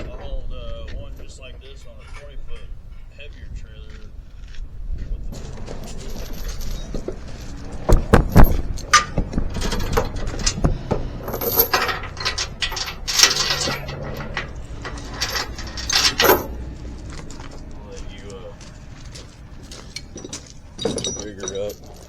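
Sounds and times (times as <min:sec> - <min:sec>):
steel chains rattling and clanking: 0:05.4 - 0:18.4, 0:19.0 - 0:22.0.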